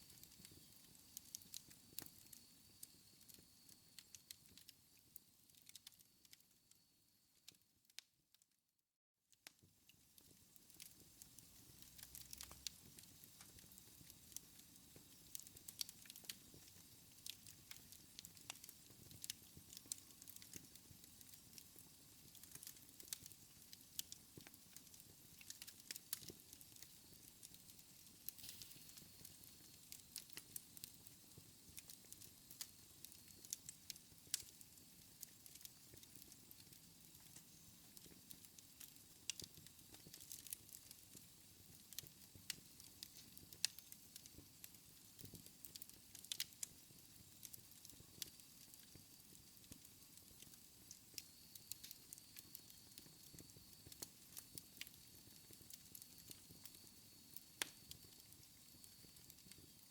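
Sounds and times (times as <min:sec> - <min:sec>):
fire popping and snapping: 0:00.0 - 0:04.8, 0:05.5 - 0:06.4, 0:10.2 - 0:59.9
wood fire crackling: 0:00.0 - 0:06.8, 0:09.4 - 0:59.9
soft hiss: 0:22.1 - 0:36.0.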